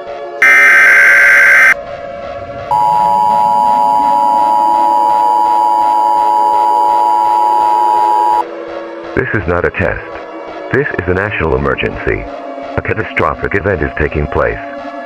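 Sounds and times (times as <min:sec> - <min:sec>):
screeching digital data tones: 0:00.4 - 0:01.8, 0:02.7 - 0:08.4
two-tone attention signal: 0:00.4 - 0:01.8, 0:02.7 - 0:08.4.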